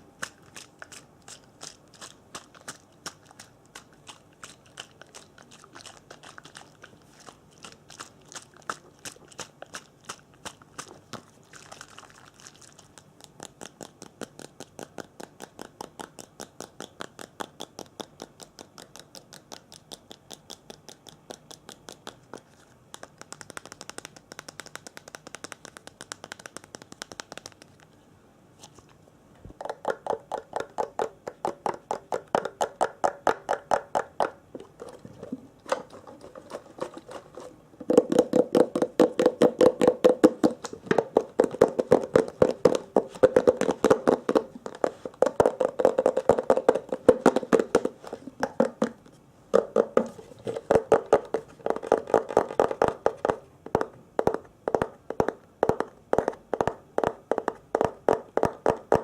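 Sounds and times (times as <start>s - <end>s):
rapid tapping strokes: 36.2s - 48.9s.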